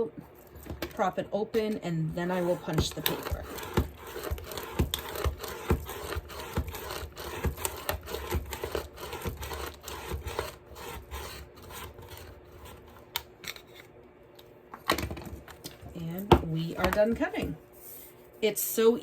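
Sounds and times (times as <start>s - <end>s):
paper trimmer slicing paper: 1.6s - 12.9s.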